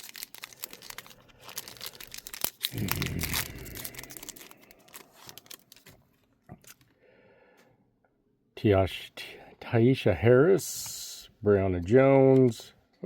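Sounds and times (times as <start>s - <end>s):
plastic wrapper tearing and crinkling: 0.0s - 6.0s, 6.6s - 6.8s.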